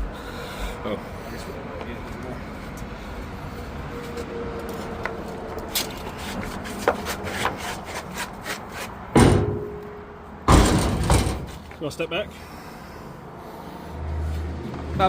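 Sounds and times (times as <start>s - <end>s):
loud bangs: 9.1s - 11.6s.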